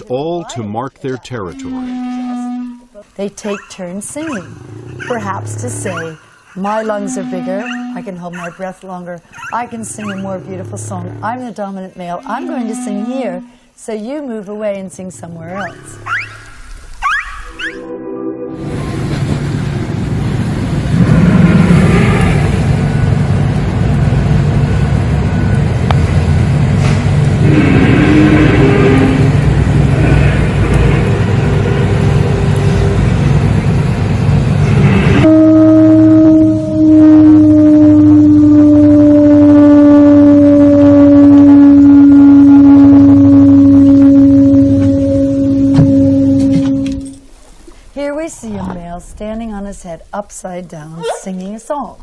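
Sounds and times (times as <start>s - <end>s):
high held whale call: 1.3s - 3.0s, 5.1s - 8.6s, 9.6s - 13.7s, 27.4s - 33.1s, 34.8s - 47.2s
whale song moans: 1.4s - 2.9s, 4.3s - 8.3s, 9.8s - 13.6s, 35.2s - 47.1s.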